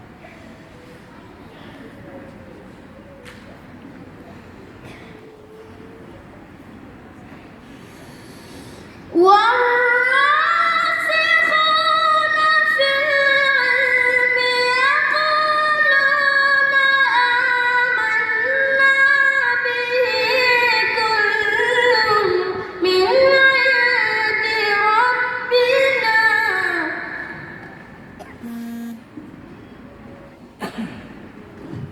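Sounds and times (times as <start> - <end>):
boy reciting in melodic chant: 9.1 - 27.6.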